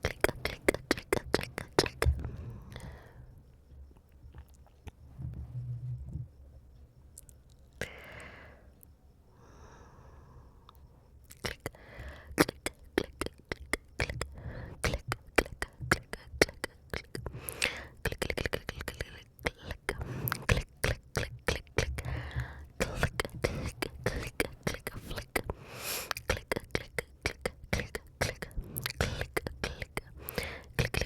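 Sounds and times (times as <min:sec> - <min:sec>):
wet mouth clicks and tongue pops: 0:00.0 - 0:02.3, 0:11.3 - 0:22.1, 0:22.8 - 0:31.0.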